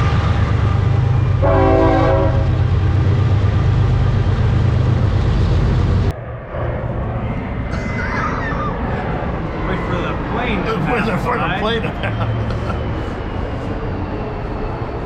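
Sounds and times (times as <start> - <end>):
large vehicle engine rumble: 0.0 - 15.0
vehicle horn blast: 1.4 - 2.4.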